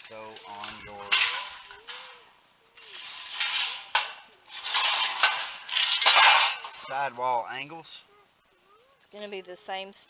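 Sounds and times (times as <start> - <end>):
sheet metal parts clinking and scraping: 0.0 - 7.3.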